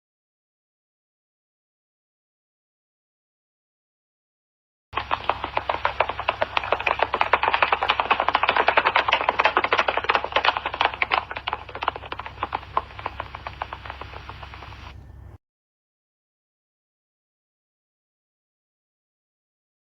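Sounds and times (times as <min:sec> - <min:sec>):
horse galloping hoofbeats: 0:05.0 - 0:15.4.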